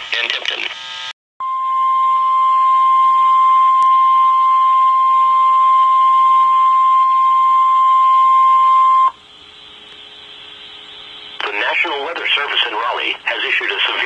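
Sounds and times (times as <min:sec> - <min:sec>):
steady alarm beep: 0:01.4 - 0:11.4.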